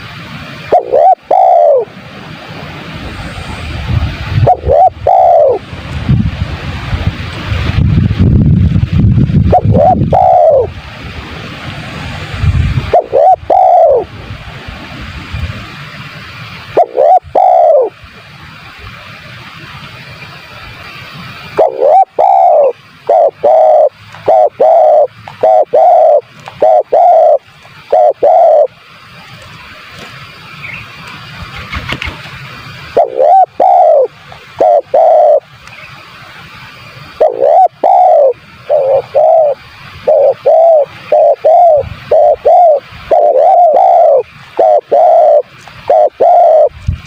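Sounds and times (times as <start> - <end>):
dove cooing: 0.7 - 2.0, 4.4 - 5.7, 9.5 - 10.8, 12.8 - 14.1, 16.7 - 18.0, 21.6 - 28.8, 32.9 - 35.5, 37.1 - 46.8.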